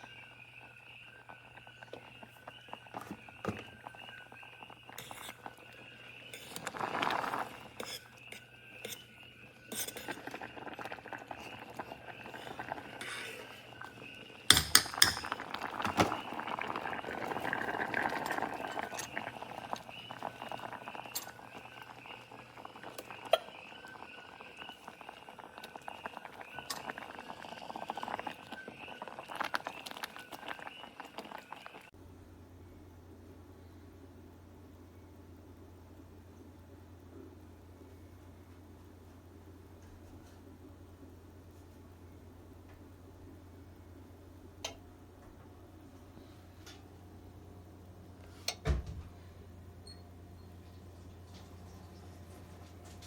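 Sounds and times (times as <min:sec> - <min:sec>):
kitchenware clinking: 0:14.5 - 0:16.2.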